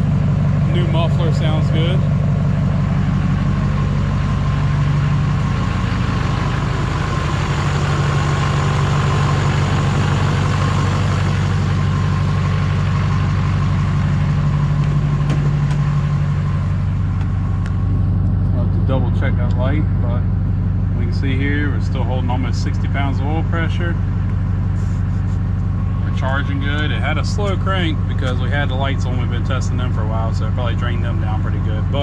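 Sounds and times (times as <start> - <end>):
diesel engine idling: 0.0 - 32.0.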